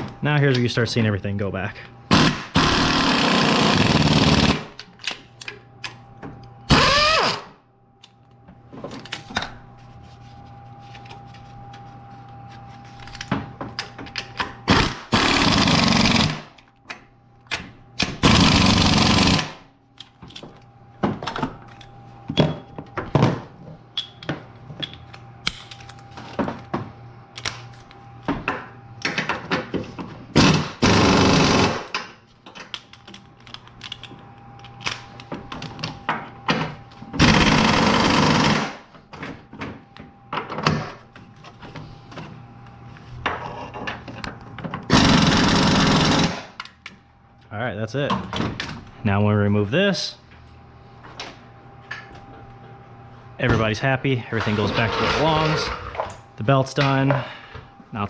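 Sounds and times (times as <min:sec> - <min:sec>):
impact wrench bursts: 0:02.1 - 0:04.7, 0:06.7 - 0:07.5, 0:14.7 - 0:16.5, 0:18.2 - 0:19.6, 0:30.4 - 0:32.0, 0:37.2 - 0:38.8, 0:44.9 - 0:46.6
tool handling clicks: 0:32.5 - 0:35.7.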